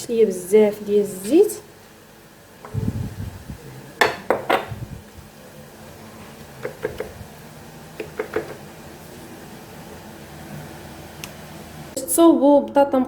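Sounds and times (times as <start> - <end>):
utensil knocking on pan: 4.0 - 4.7, 6.6 - 7.1, 8.0 - 8.6.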